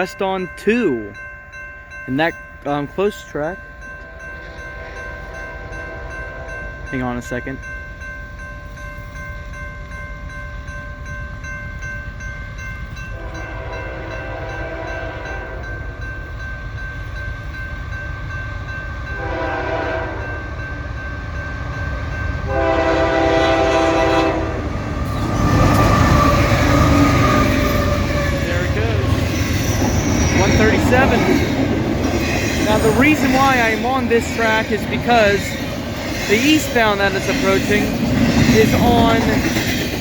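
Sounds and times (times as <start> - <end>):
train passing: 0.0 - 40.0
locomotive air horn blasts: 13.2 - 15.6, 19.2 - 20.4, 22.5 - 24.6.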